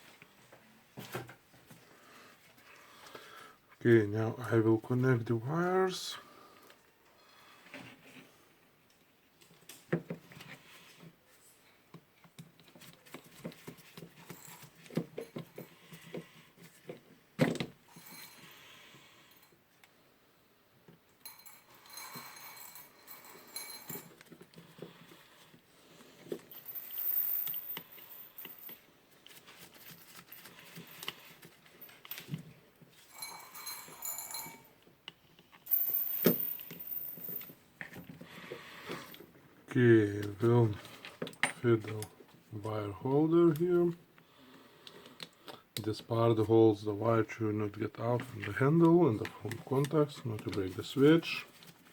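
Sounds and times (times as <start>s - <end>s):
small clicks of hand work: 44.2s - 45.9s.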